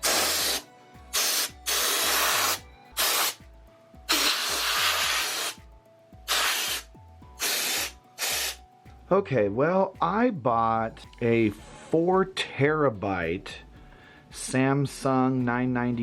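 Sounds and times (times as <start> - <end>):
compressed air hissing bursts: 0.0 - 3.4, 4.1 - 5.6, 6.3 - 8.6.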